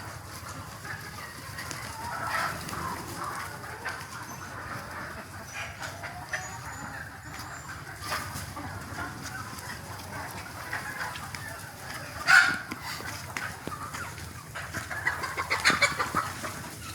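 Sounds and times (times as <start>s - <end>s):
chickens clucking and chirping: 0.0s - 16.9s.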